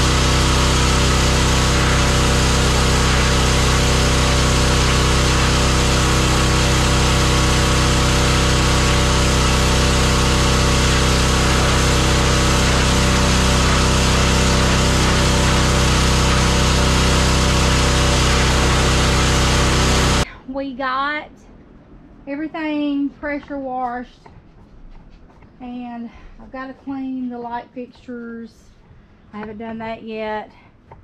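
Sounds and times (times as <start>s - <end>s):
pressure washer running: 0.0s - 20.3s.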